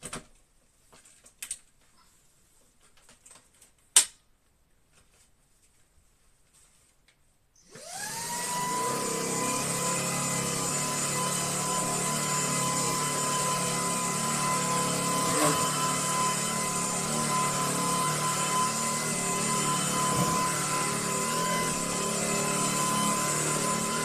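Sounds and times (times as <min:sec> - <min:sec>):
vacuum motor whining: 0:07.6 - 0:24.0.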